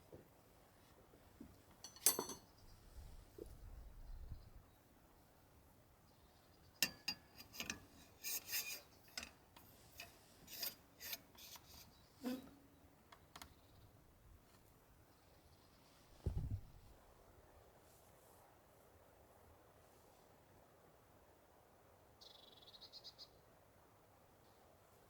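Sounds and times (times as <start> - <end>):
dry scraping and rubbing: 7.4 - 12.6.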